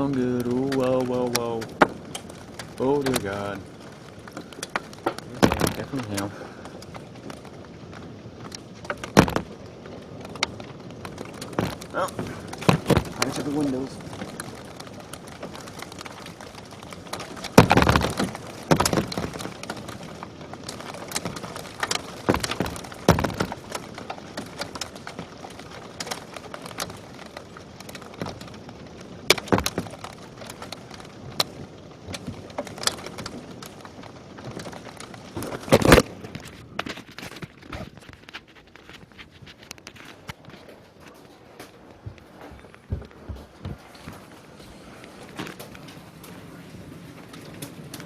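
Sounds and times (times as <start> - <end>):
hailstones striking hard surfaces: 0.0 - 48.0.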